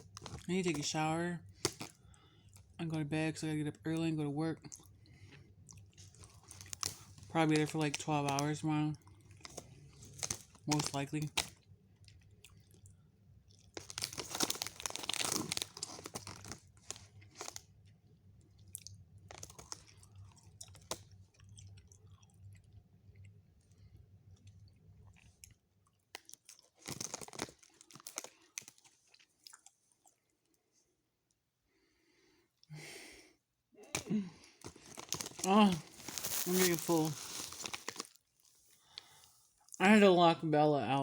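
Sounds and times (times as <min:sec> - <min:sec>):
person chewing wetly: 0:00.0 - 0:00.5, 0:01.4 - 0:02.8, 0:04.6 - 0:30.6, 0:34.4 - 0:38.2.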